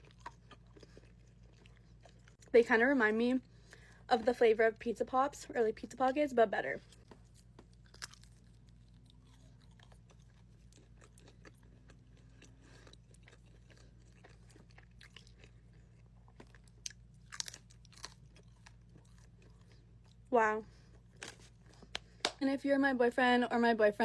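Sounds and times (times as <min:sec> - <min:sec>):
close-up chewing with crunches: 0:00.0 - 0:02.6, 0:06.8 - 0:22.3.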